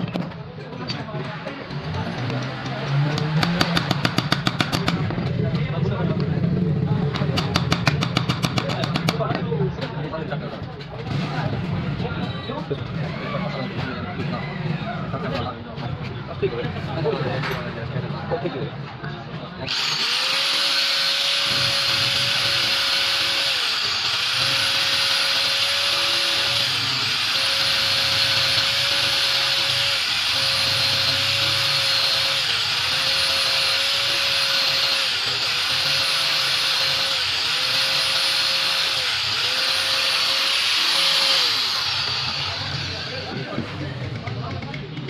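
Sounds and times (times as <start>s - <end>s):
power tool motor whining: 19.6s - 43.6s.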